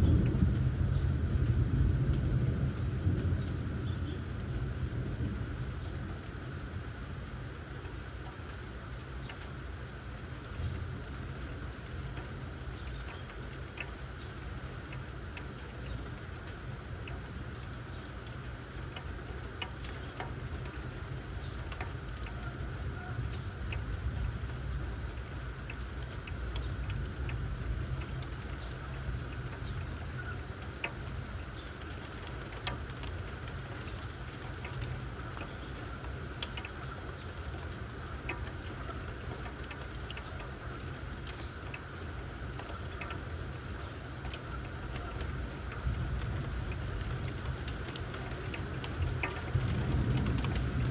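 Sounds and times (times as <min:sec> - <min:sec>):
steady rain: 0:00.0 - 0:50.9
drops ticking on hard surface: 0:11.9 - 0:50.9.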